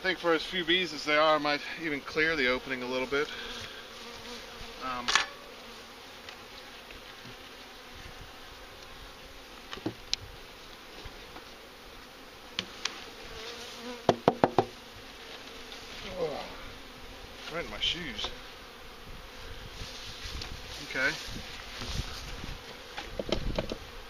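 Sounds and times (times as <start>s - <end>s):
honeybees buzzing: 0.0s - 24.0s
sharp knocks: 14.1s - 14.7s.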